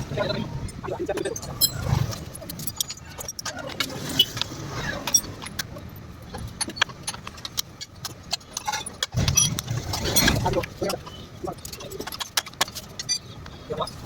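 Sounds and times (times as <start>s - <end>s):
tools clinking on metal: 2.4s - 4.4s, 10.8s - 13.4s.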